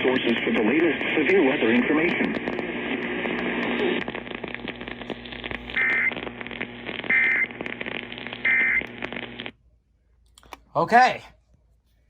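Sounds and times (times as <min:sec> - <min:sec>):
radio static hiss: 0:00.0 - 0:09.5.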